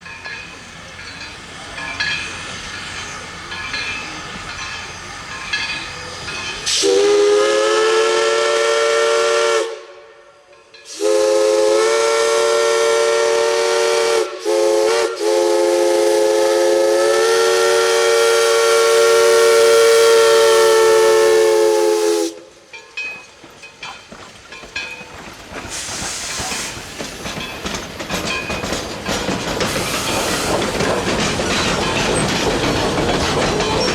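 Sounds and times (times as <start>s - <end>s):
train clattering and hissing: 0.0s - 33.9s
steam whistle blasts: 6.7s - 22.5s.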